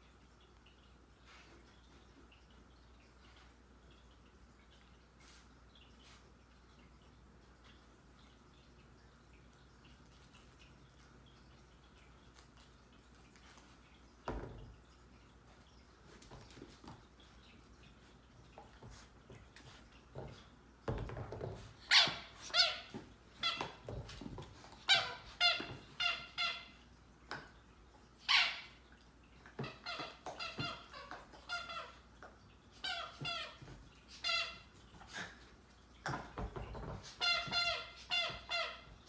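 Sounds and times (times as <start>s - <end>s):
squeaky toy squeaking: 21.8s - 23.7s, 28.2s - 28.7s, 34.2s - 34.6s, 37.1s - 38.9s.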